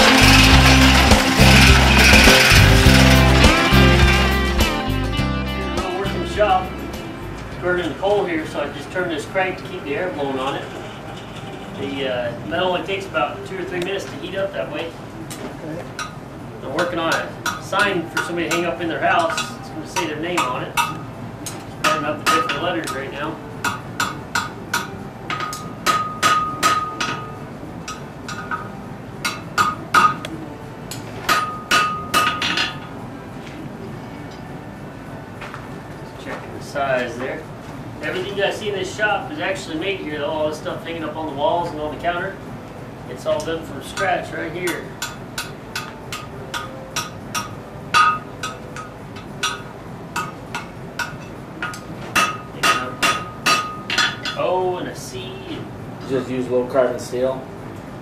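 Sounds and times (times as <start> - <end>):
hammer striking steel on anvil: 17.1 - 30.4, 31.2 - 32.8, 44.7 - 54.4.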